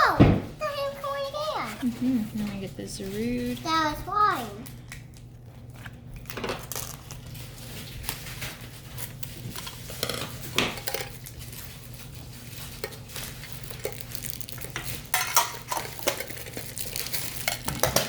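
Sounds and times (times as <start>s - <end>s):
metal tins clinking and scraping: 14.7s - 18.0s.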